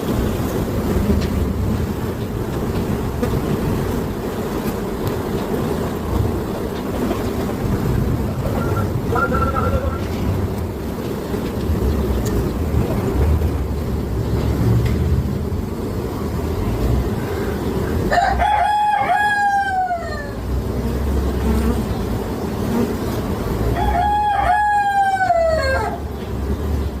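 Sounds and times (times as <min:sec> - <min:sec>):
steady low rumble: 0:07.2 - 0:18.1
long pitched animal calls: 0:08.3 - 0:10.3.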